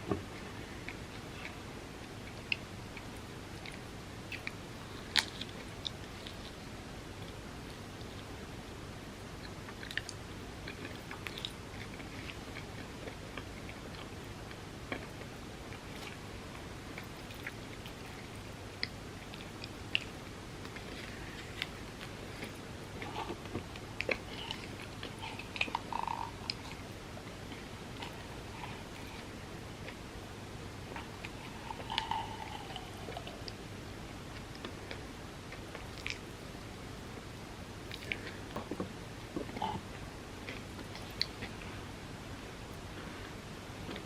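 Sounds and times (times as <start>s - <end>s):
faint hiss: 0.0s - 44.0s
chewing cookies: 9.2s - 30.1s, 30.8s - 36.4s, 37.8s - 41.8s.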